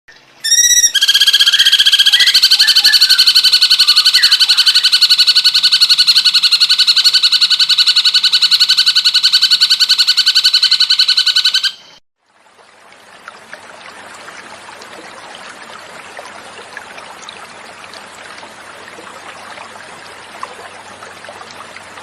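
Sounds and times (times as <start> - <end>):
bird fast trill: 0.4 - 12.0.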